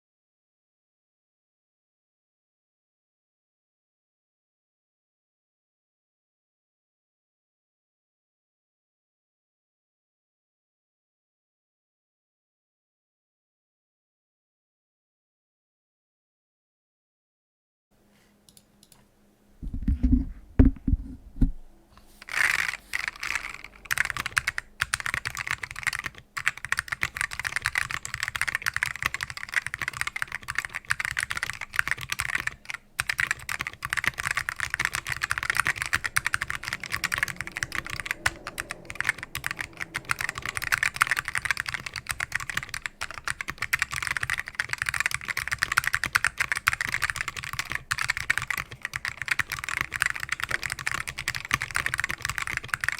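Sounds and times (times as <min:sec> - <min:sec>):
low thumps: 0:19.6 - 0:21.7.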